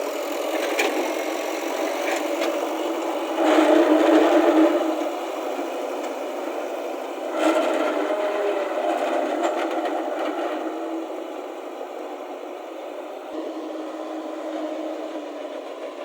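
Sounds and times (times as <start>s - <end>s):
diesel engine running: 0.0s - 16.0s
scraping clatter: 2.0s - 6.5s, 7.2s - 11.1s.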